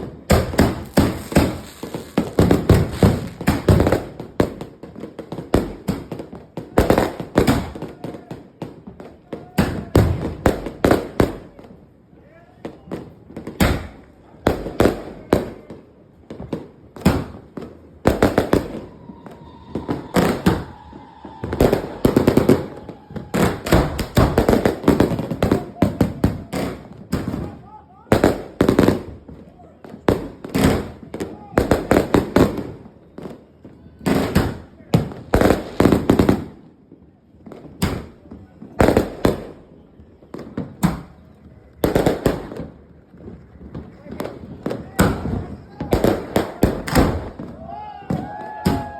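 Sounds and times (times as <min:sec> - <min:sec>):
fireworks bangs: 0:00.0 - 0:12.0, 0:12.6 - 0:48.9
faint steady whistle: 0:18.7 - 0:23.5, 0:32.8 - 0:34.1.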